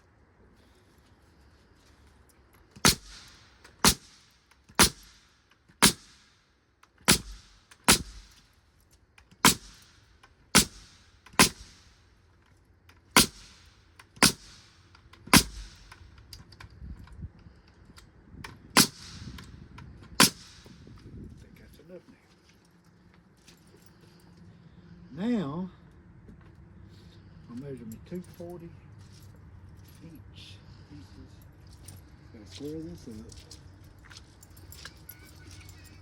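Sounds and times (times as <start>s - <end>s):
nail gun air hiss: 2.8s - 6.4s, 7.0s - 8.5s, 9.3s - 12.1s, 13.2s - 16.1s, 18.8s - 19.6s, 20.2s - 21.0s
nail gun shots: 2.8s - 6.4s, 7.0s - 8.5s, 9.3s - 12.0s, 13.1s - 16.0s, 18.7s - 20.9s.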